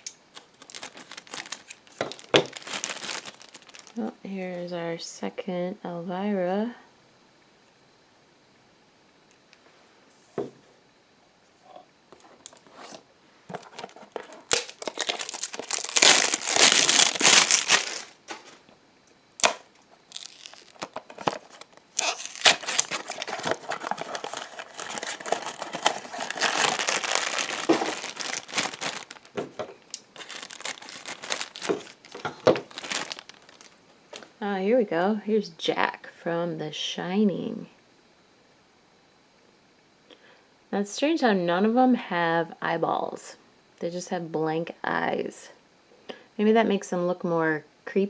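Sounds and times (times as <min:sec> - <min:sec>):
toy packaging crinkling and tearing: 0:00.0 - 0:04.0, 0:13.6 - 0:18.5, 0:19.4 - 0:33.8.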